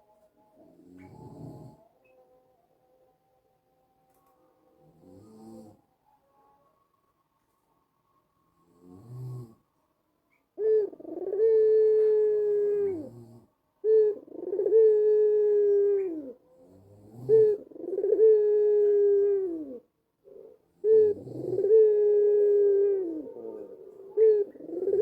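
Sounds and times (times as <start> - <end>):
dove cooing: 0.6 - 2.1, 10.6 - 25.0.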